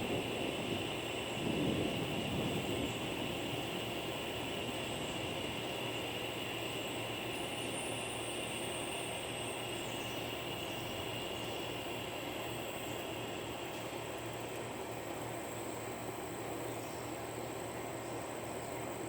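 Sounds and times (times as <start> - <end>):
cicadas droning: 0.0 - 19.0
rolling thunder: 1.4 - 2.8.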